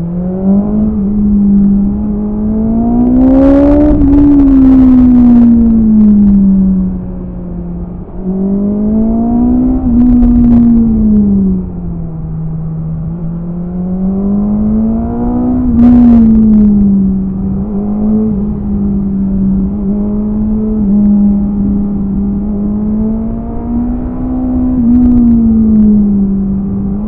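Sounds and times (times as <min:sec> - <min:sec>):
motorcycle engine revving: 0:00.0 - 0:06.9.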